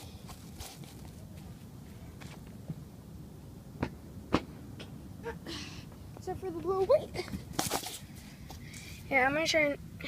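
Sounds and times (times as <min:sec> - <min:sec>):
scraping rustle: 0:00.0 - 0:01.6.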